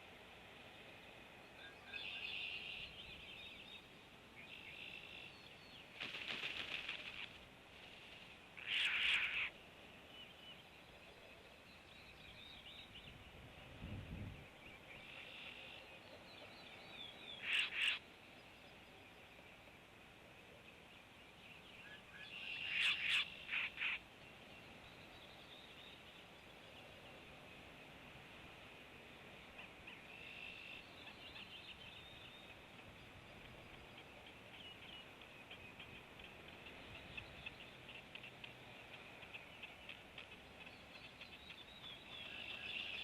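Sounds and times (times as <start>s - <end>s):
loud bird calls: 8.6s - 9.5s, 17.3s - 18.0s.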